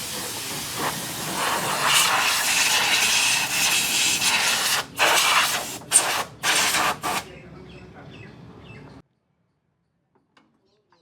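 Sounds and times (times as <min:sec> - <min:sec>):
pressurised jet hissing: 0:00.0 - 0:07.3.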